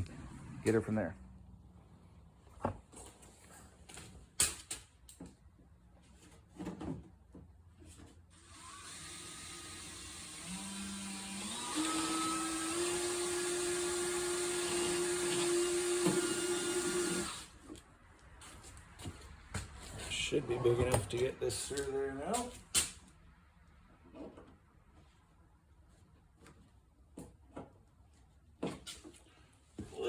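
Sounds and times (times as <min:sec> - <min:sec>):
electric drill drilling: 0:08.4 - 0:17.5.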